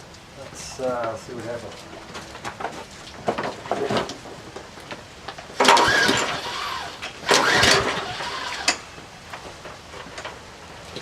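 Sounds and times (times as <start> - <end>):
engine cranking whir: 5.6 - 8.9
recoil starter cord yanks: 5.6 - 8.9.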